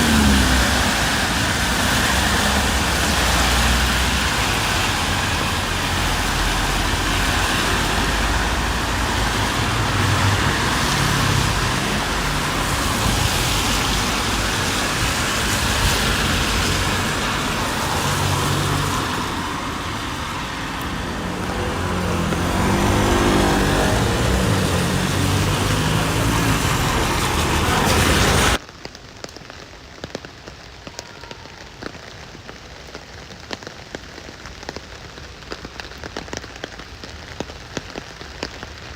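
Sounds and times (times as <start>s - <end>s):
vehicle engine passing: 0.0s - 28.6s
rain hissing: 0.0s - 38.9s
raindrops ticking on a surface: 0.0s - 38.9s.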